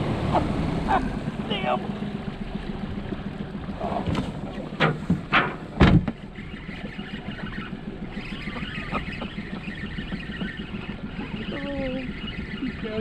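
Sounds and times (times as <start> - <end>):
boat motor running: 0.0 - 13.0
sharp knocks and thumps: 4.0 - 6.2.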